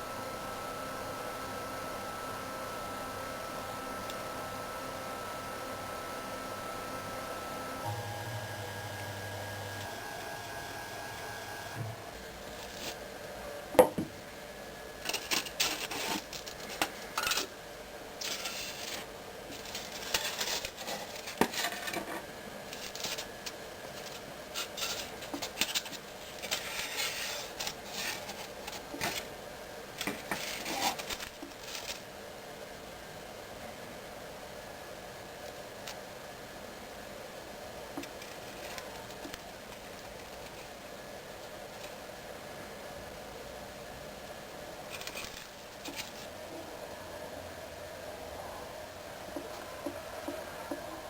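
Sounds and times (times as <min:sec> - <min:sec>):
machine hum with tones: 0:00.0 - 0:13.7.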